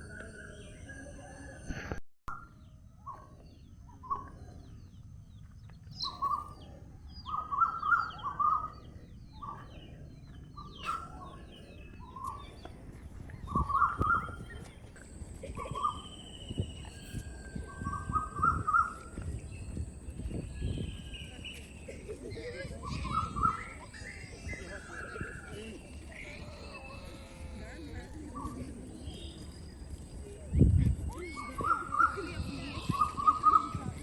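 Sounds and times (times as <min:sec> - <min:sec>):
high bird chirps: 0:05.9 - 0:06.6.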